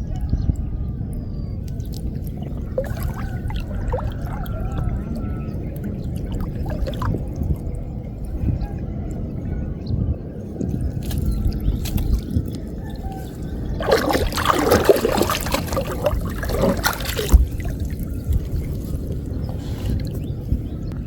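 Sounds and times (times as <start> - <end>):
water splashing and dripping: 1.6 - 8.3, 10.7 - 20.2.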